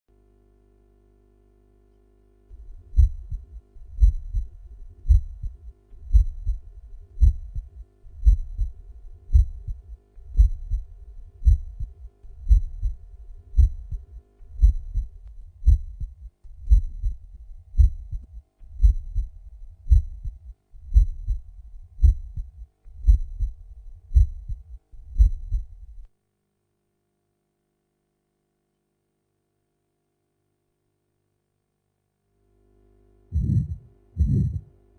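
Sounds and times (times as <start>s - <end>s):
heartbeat lub-dub: 2.5s - 26.1s, 33.3s - 34.7s.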